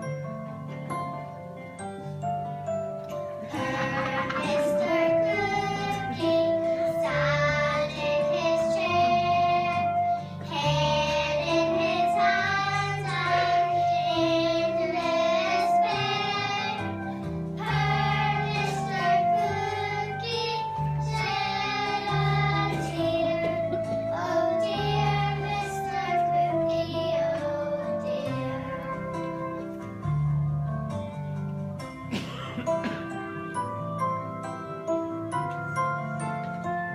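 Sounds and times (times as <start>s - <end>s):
children singing: 3.5s - 29.0s.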